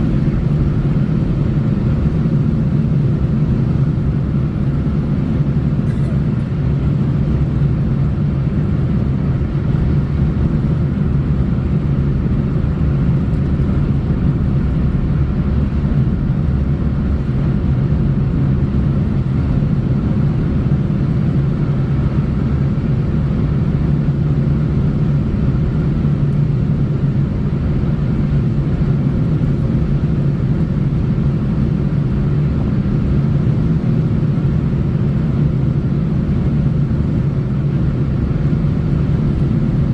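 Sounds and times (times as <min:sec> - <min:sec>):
car road and engine rumble: 0:00.0 - 0:39.9.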